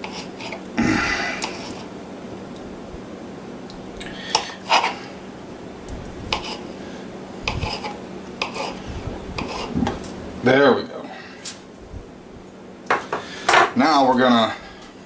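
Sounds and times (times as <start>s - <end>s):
knife cutting cheese: 7.5s - 8.8s, 9.4s - 9.8s.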